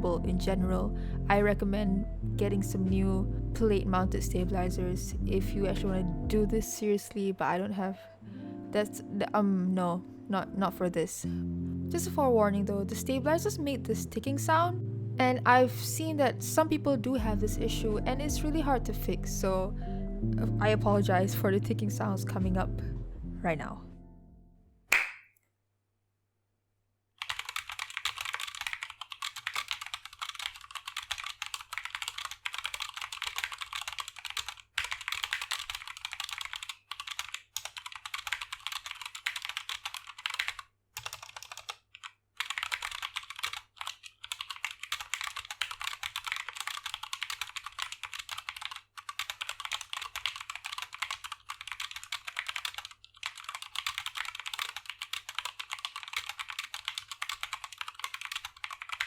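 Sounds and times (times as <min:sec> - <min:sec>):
mechanical keyboard typing: 0:27.2 - 0:59.0.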